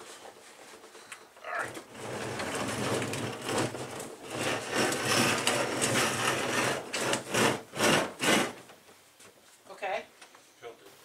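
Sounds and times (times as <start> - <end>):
refrigerator scraping across floor: 0.0 - 8.6.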